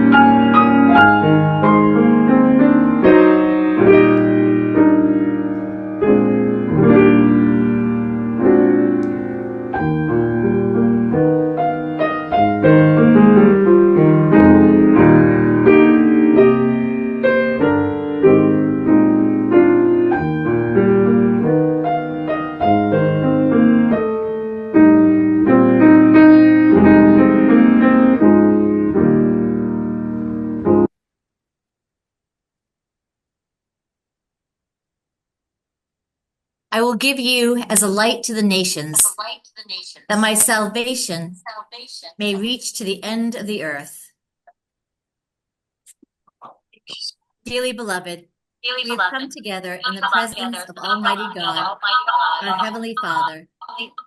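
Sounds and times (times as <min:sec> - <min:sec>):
piano playing chords: 0:00.0 - 0:30.9.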